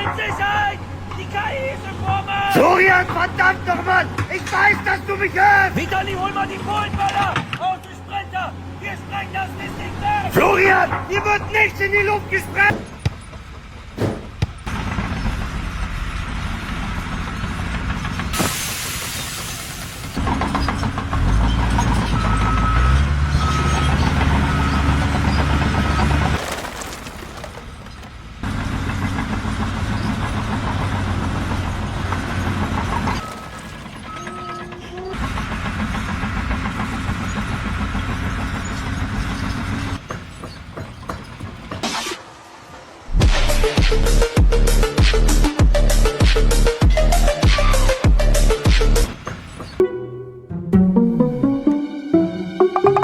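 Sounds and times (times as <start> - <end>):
heavy engine running: 0.0 - 50.0
knocks: 12.7 - 14.7.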